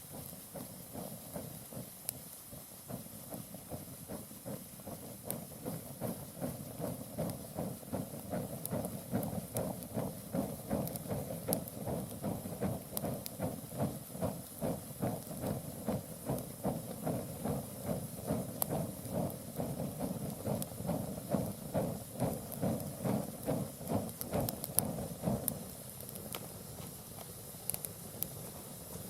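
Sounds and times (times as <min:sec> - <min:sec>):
fire crackles and pops: 0:00.1 - 0:29.0
fire burning with rushing flames: 0:04.2 - 0:29.0.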